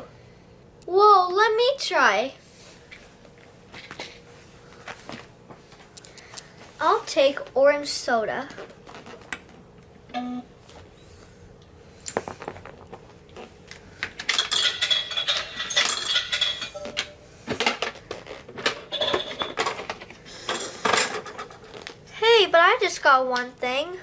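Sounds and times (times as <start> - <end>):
vending machine beep: 10.1 - 11.1, 16.8 - 17.2.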